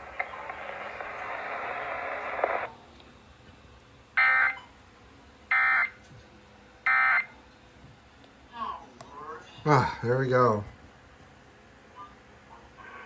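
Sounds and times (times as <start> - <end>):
radio hiss: 0.0 - 2.8.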